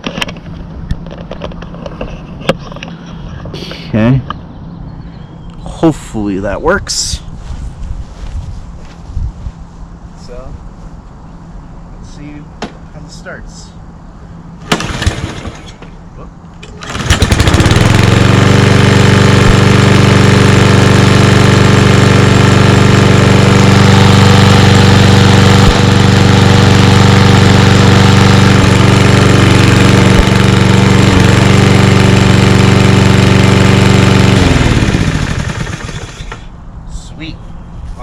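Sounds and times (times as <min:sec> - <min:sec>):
lawn mower engine running: 0:14.6 - 0:15.9, 0:16.6 - 0:36.6
pull starter: 0:14.7 - 0:15.8, 0:16.6 - 0:20.8, 0:21.6 - 0:36.5.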